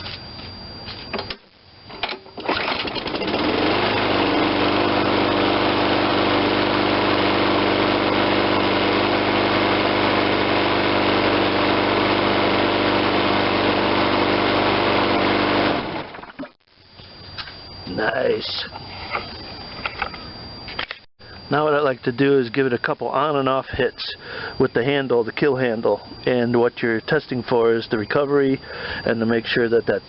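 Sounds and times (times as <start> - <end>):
recoil starter pull: 2.0 - 4.4
mower engine running: 2.4 - 16.2.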